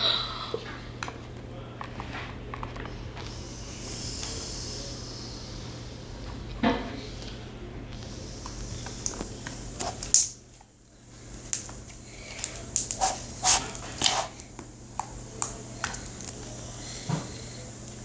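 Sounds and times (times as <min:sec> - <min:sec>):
slime squelching: 0:12.3 - 0:16.4.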